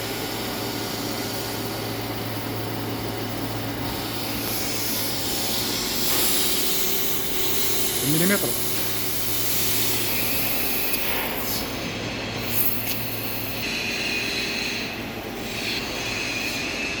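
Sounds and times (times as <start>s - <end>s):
laser cutting machine hissing: 0.0s - 17.0s.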